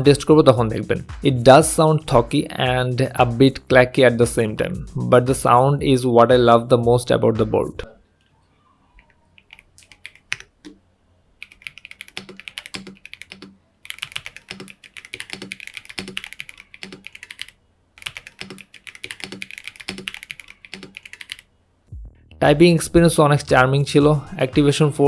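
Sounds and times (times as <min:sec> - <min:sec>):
mechanical keyboard typing: 0:09.4 - 0:10.8, 0:11.4 - 0:21.5.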